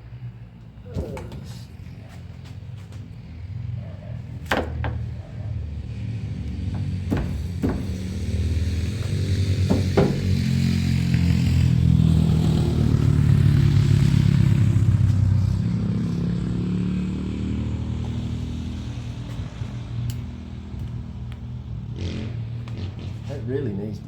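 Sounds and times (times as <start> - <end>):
engine running: 0.0 - 24.0
sharp knocks: 4.4 - 5.2, 6.6 - 10.8.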